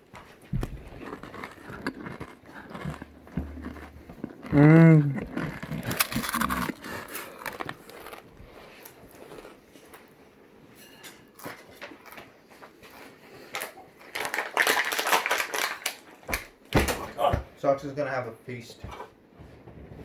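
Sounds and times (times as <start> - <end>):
ice cream cones crunching: 0.0 - 10.2, 11.4 - 16.4.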